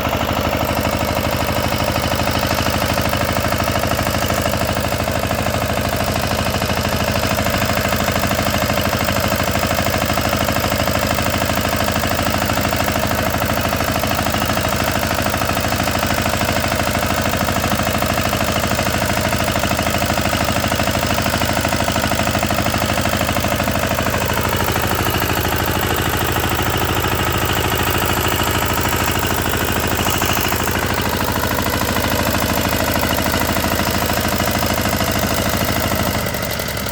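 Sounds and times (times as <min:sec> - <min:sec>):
milling machine motor running: 0:22.2 - 0:36.9.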